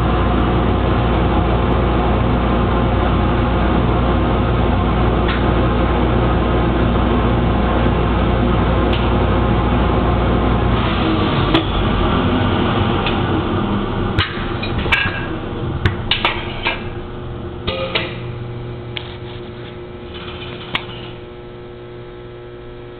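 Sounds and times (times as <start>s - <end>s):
lathe running with mechanical hum: 0.0s - 22.9s.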